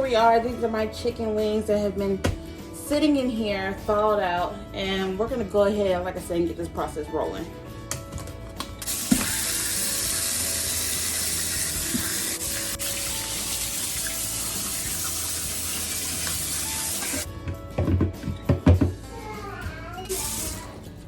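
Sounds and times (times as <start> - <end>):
tap water running into sink: 8.8 - 17.3, 20.1 - 20.8.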